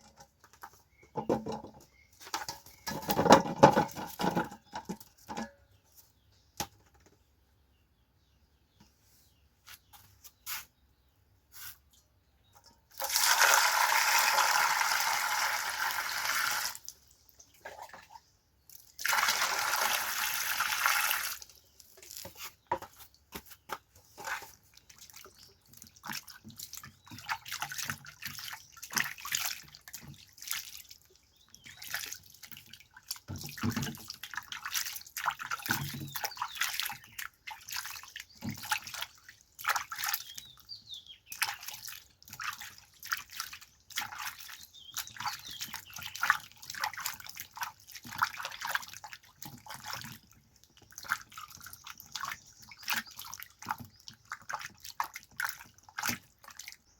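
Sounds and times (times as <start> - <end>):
water splashing and dripping: 12.9 - 56.9
water running from tap: 13.0 - 16.9, 19.0 - 21.4.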